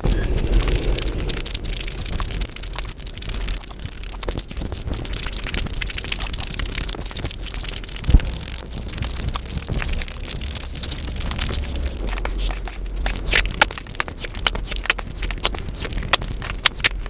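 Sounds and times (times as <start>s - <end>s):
low thump: 0.0s - 2.6s.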